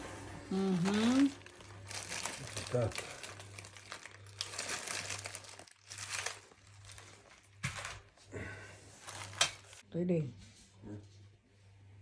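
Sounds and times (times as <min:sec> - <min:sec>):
crinkling and rustling handling: 0:00.2 - 0:09.8.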